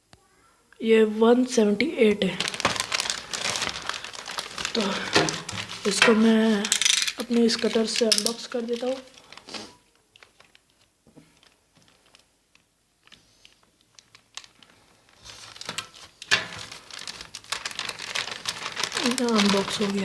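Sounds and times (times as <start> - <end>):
packaging crinkling and tearing: 2.3 - 20.0
knife scratching package: 15.2 - 20.0.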